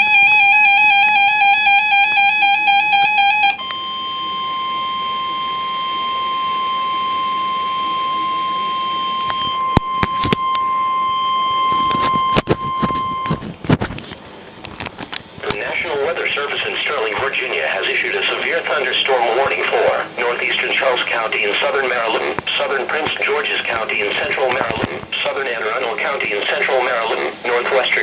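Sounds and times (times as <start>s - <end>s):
steady loud alarm beep: 0.0s - 13.4s
static crackles: 11.7s - 28.0s.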